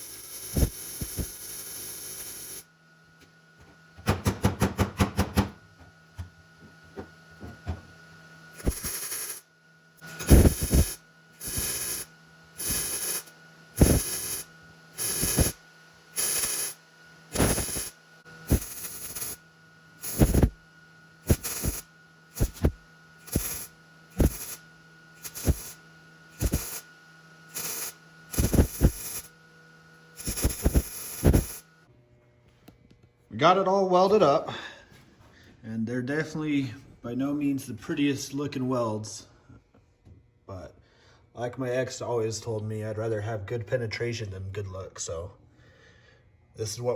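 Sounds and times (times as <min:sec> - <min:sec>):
welder crackling bursts: 0:00.0 - 0:02.7, 0:08.5 - 0:19.4, 0:20.0 - 0:20.6, 0:21.2 - 0:26.9, 0:27.5 - 0:29.4, 0:30.1 - 0:31.7
electrical hum: 0:00.0 - 0:46.9.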